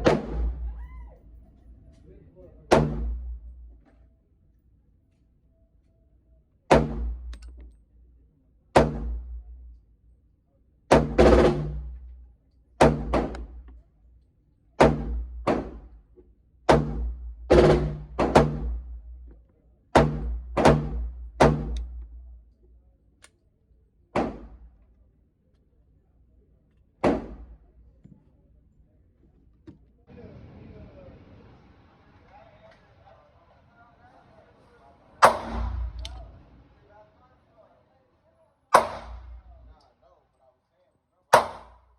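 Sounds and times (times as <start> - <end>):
gunshots echoing: 0.0 - 0.7, 35.2 - 36.3, 38.8 - 39.7, 41.4 - 41.8.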